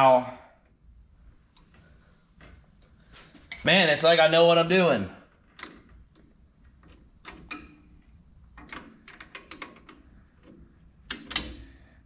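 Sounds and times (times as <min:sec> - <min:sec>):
metallic clicks and taps of tools: 0:05.6 - 0:07.8, 0:08.6 - 0:11.7.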